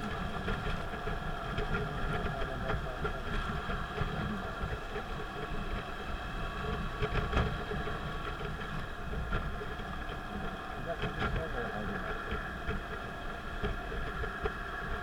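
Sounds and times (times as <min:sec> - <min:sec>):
car road and engine rumble: 0:00.0 - 0:15.0.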